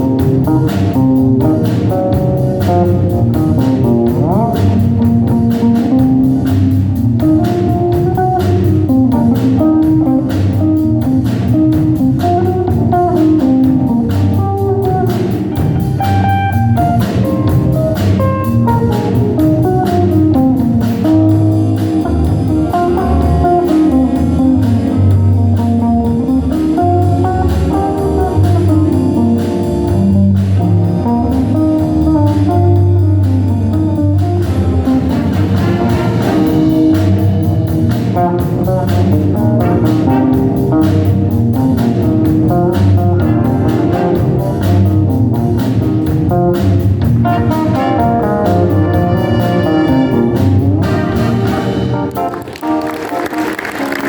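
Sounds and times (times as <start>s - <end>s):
low bass line: 0.0s - 52.5s
band playing a tune: 0.0s - 54.0s.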